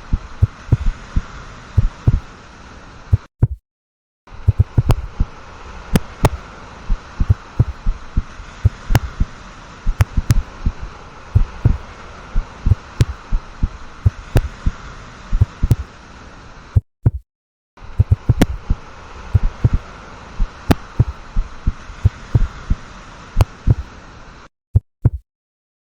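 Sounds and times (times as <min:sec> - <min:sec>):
steady hiss: 0:00.0 - 0:03.3, 0:04.3 - 0:16.8, 0:17.8 - 0:24.5
human heartbeat: 0:00.4 - 0:01.0, 0:01.8 - 0:02.3, 0:03.1 - 0:03.6, 0:04.4 - 0:05.2, 0:05.9 - 0:06.4, 0:07.2 - 0:09.3, 0:09.9 - 0:10.8, 0:11.4 - 0:11.8, 0:12.7 - 0:14.6, 0:15.4 - 0:15.9, 0:16.8 - 0:17.2, 0:18.0 - 0:18.7, 0:19.3 - 0:19.8, 0:20.7 - 0:21.2, 0:22.0 - 0:22.8, 0:23.4 - 0:23.9, 0:24.8 - 0:25.2.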